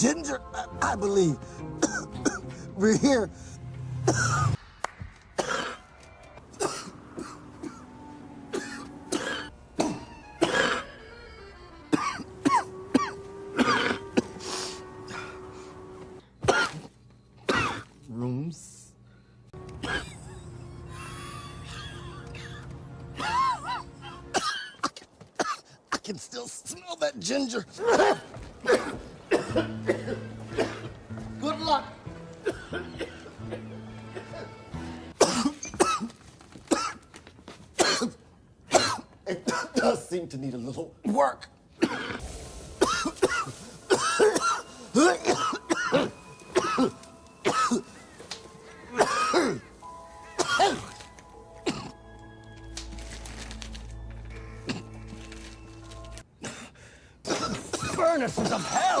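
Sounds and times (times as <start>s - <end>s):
soft background music: 0.0s - 4.6s, 6.3s - 18.7s, 19.4s - 24.9s, 27.8s - 36.0s, 42.8s - 56.3s
person coughing: 1.8s - 2.5s, 5.4s - 5.8s, 6.6s - 7.9s, 8.5s - 10.9s, 11.9s - 14.3s, 16.4s - 16.9s, 17.5s - 17.9s, 19.8s - 20.2s, 27.8s - 30.9s, 35.2s - 36.1s, 36.7s - 37.0s, 37.8s - 40.0s, 41.8s - 42.2s, 42.8s - 47.9s, 48.9s - 49.7s, 50.4s - 51.0s, 51.6s - 52.0s, 57.3s - 59.0s.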